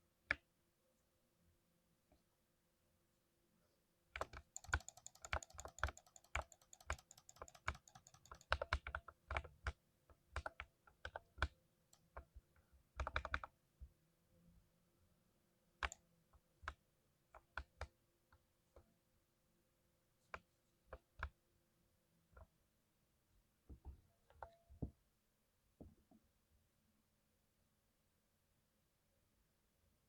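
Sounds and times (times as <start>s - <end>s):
mechanical keyboard typing: 4.2s - 9.8s, 13.0s - 13.5s.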